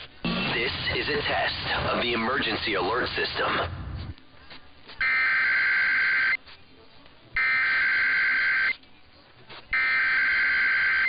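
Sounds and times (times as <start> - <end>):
two-tone digital data bursts: 5.0 - 6.4, 7.4 - 8.8, 9.8 - 11.0.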